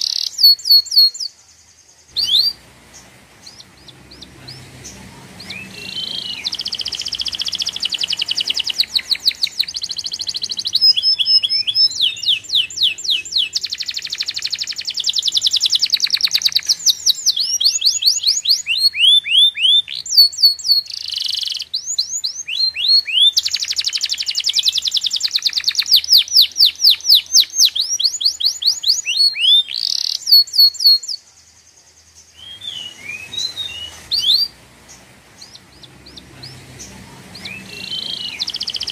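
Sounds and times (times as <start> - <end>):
songbird singing trills: 0.0 - 38.9.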